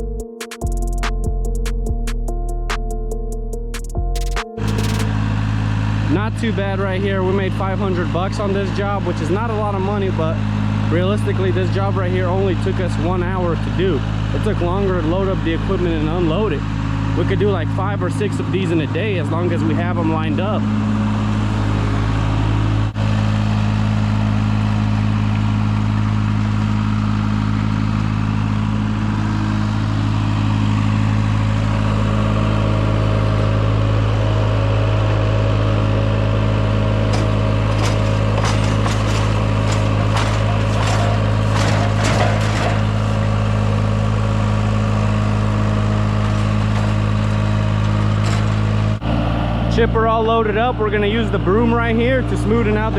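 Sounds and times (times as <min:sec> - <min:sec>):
engine idling: 0:00.0 - 0:52.9
sharp knocks and clanks: 0:37.1 - 0:43.3.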